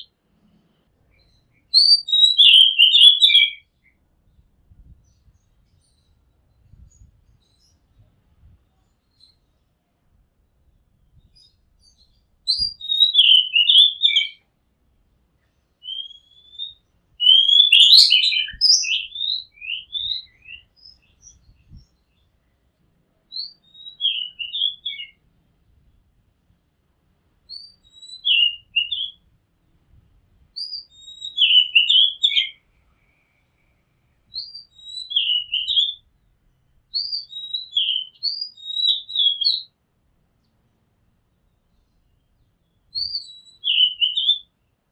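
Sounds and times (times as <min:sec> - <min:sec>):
bird singing whistled notes: 0:01.1 - 0:04.0, 0:11.0 - 0:14.4, 0:15.8 - 0:22.3, 0:23.2 - 0:25.2, 0:27.5 - 0:29.2, 0:30.6 - 0:32.7, 0:34.3 - 0:36.2, 0:36.9 - 0:39.8, 0:41.7 - 0:44.6.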